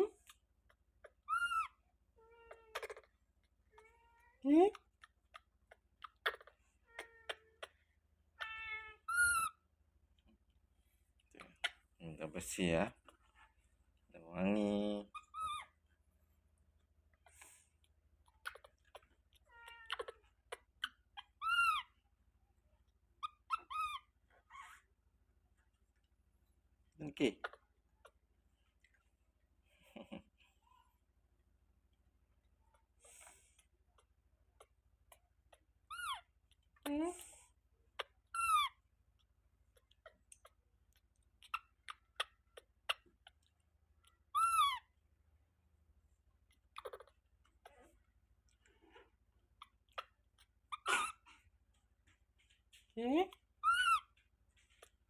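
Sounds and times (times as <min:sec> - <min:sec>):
baby monkey squeaks and cries: 0:00.7 - 0:03.2, 0:05.3 - 0:09.7, 0:15.0 - 0:15.8, 0:18.3 - 0:22.0, 0:23.2 - 0:24.9, 0:34.6 - 0:36.4, 0:37.9 - 0:38.9, 0:41.4 - 0:43.5, 0:44.1 - 0:45.0, 0:46.6 - 0:47.9, 0:49.6 - 0:51.4, 0:53.4 - 0:55.0
baby monkey squeaky calls: 0:01.0 - 0:01.8, 0:08.4 - 0:09.6, 0:15.1 - 0:15.8, 0:19.7 - 0:22.0, 0:23.2 - 0:24.8, 0:35.9 - 0:36.3, 0:38.0 - 0:38.8, 0:44.3 - 0:45.0, 0:50.0 - 0:51.4, 0:53.6 - 0:54.2.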